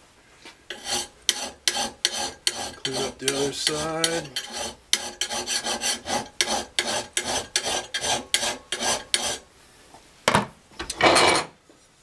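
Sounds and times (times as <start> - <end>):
file rasping on metal blade: 0.7 - 9.4.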